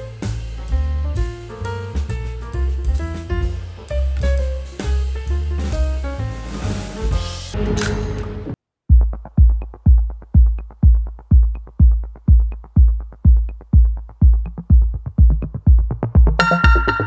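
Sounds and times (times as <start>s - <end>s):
kick drum beat: 0.0s - 6.0s, 8.8s - 17.0s
sustained synth chords: 16.4s - 17.0s.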